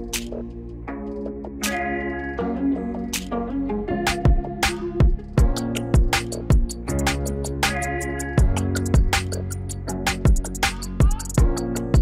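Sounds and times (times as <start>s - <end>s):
drum beat: 4.2s - 9.5s, 10.1s - 12.0s.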